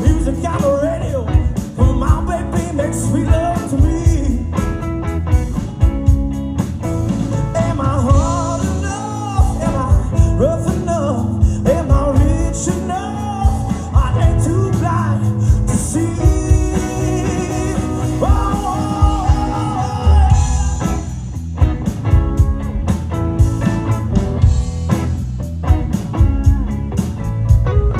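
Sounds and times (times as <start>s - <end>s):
lead vocal singing: 0.0s - 4.5s, 7.5s - 21.4s
rock band playing: 0.0s - 27.9s.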